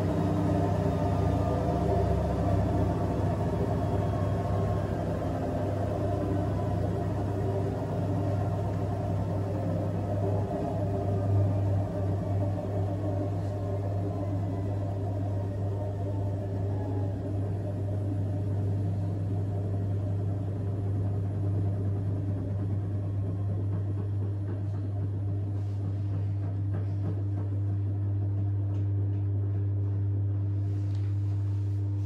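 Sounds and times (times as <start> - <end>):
washing machine drum spinning: 0.0 - 30.5
low motor hum: 0.0 - 32.0.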